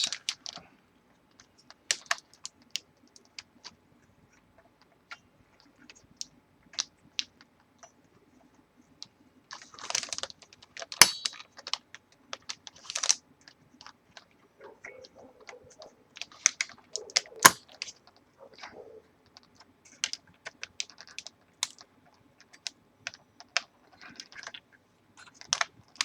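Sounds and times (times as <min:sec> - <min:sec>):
clicks and taps handling fan: 0:11.0 - 0:11.8.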